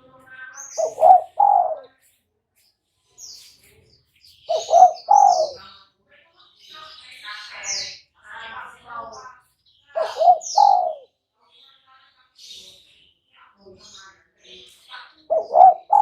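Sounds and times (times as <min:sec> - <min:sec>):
small birds chirping: 0:00.0 - 0:16.0
dove cooing: 0:00.8 - 0:01.9, 0:04.5 - 0:05.6, 0:10.0 - 0:11.1, 0:15.3 - 0:16.0.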